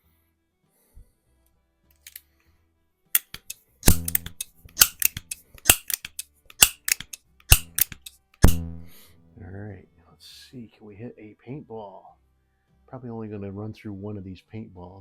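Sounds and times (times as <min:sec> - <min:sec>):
air pistol pumping clicks: 0:03.2 - 0:08.6
loud metallic clack: 0:03.2 - 0:09.0.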